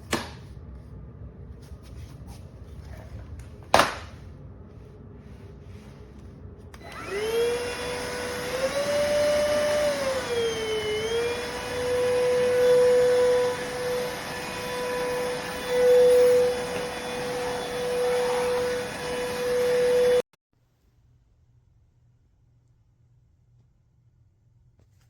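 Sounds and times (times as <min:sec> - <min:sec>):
vacuum cleaner motor whine: 0:06.7 - 0:20.3.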